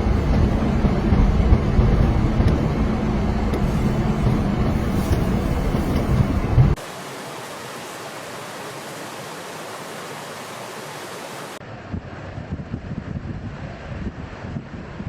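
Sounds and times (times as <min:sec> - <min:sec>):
wind rumbling on microphone: 0:00.0 - 0:06.8, 0:11.5 - 0:15.0
steady rushing hiss: 0:00.0 - 0:11.6.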